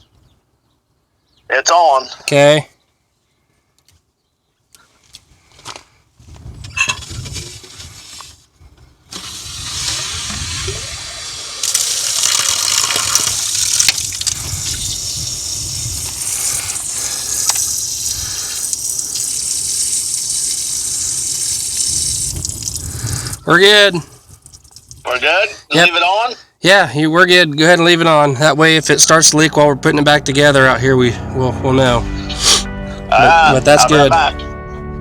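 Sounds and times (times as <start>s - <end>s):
water rushing from hydrant: 9.2s - 25.2s.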